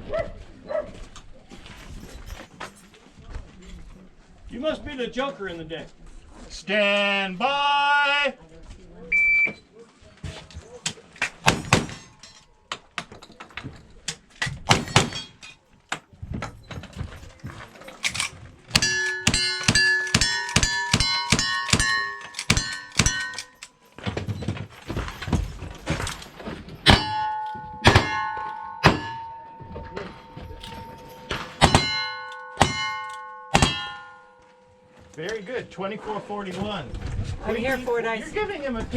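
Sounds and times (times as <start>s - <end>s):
steel target ringing: 18.7s - 23.9s, 26.8s - 35.8s
gunshots: 31.3s - 34.2s.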